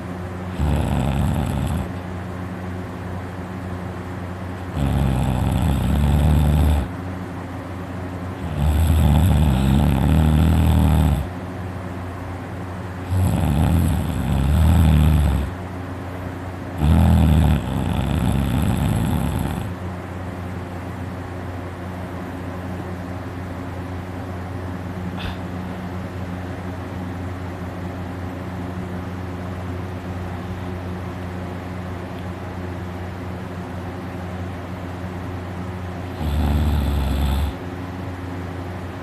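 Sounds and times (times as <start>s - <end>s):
person snoring loudly: 0.5s - 2.0s, 4.7s - 6.9s, 8.4s - 11.3s, 13.0s - 15.6s, 16.8s - 19.8s, 36.1s - 37.6s.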